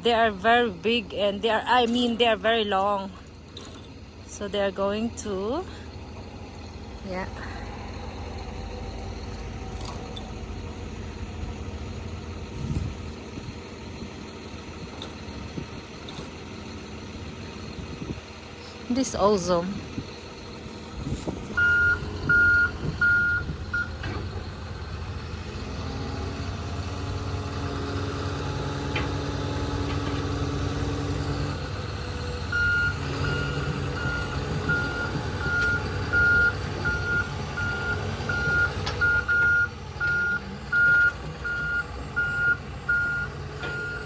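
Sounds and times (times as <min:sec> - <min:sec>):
large engine running: 0:00.0 - 0:44.0
reversing alarm beeping: 0:21.5 - 0:24.1, 0:32.5 - 0:44.0.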